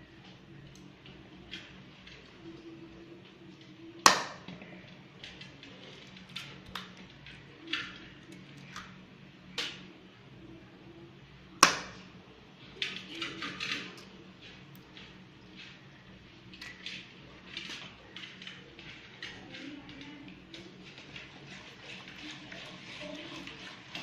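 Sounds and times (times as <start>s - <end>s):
utensils clicking and clinking: 12.8s - 24.0s.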